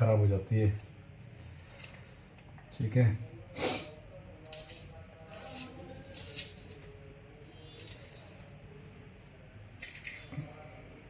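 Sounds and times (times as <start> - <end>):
onion skin rustling: 0.0 - 2.5, 4.4 - 8.6.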